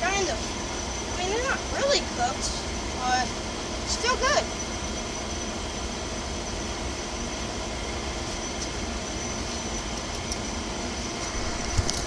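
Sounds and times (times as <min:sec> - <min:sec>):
pool heater hum: 0:00.0 - 0:12.0.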